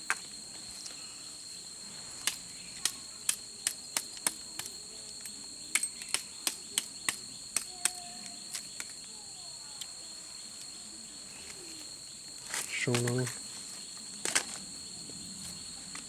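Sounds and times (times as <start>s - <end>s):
crickets calling: 0.0s - 16.0s.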